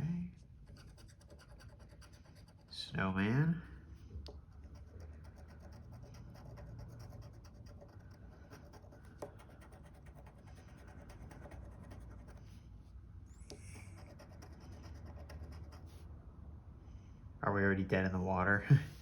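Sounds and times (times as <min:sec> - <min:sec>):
scratching a scratch-off ticket: 0:00.6 - 0:02.8, 0:04.6 - 0:12.6, 0:13.5 - 0:16.0.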